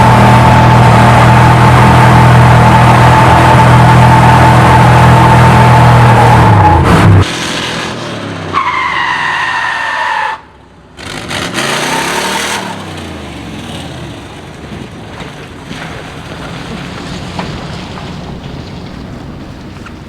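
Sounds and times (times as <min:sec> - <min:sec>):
tires squealing: 0:00.0 - 0:07.9, 0:08.5 - 0:13.9
engine revving: 0:00.0 - 0:08.5, 0:11.0 - 0:14.2.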